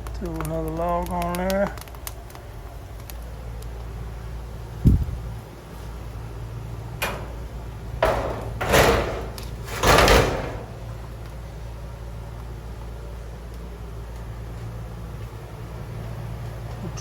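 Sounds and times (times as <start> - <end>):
steady low hum: 0.0 - 17.0
metal door scraping shut: 6.9 - 11.0.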